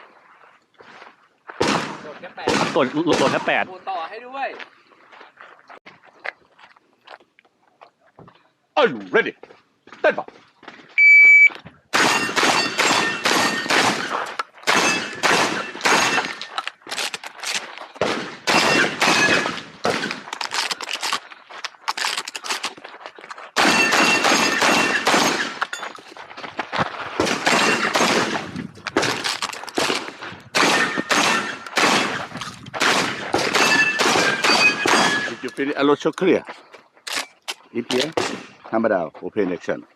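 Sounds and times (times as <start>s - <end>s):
rapid shotgun fire with echo: 1.6s - 3.5s, 12.0s - 16.3s, 18.0s - 20.2s, 23.6s - 25.6s, 27.2s - 29.2s, 29.8s - 35.2s.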